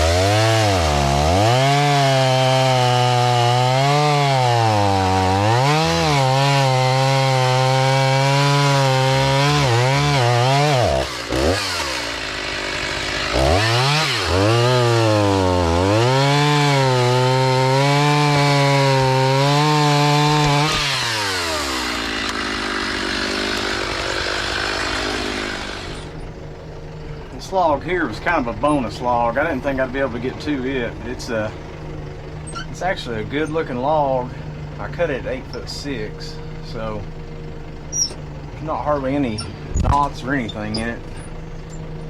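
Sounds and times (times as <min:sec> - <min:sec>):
chainsaw cutting log: 0:00.0 - 0:42.0
chainsaw idling: 0:00.0 - 0:42.0.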